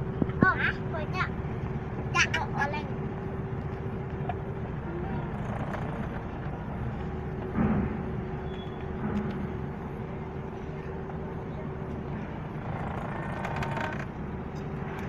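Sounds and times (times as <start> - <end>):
vehicle engines rumbling: 0.0 - 15.0
loud thump: 7.5 - 8.1.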